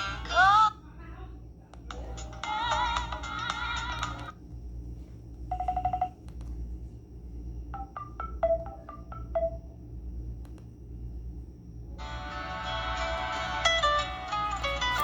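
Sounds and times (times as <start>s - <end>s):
phone ringtone melody: 5.5s - 6.2s, 7.8s - 9.8s.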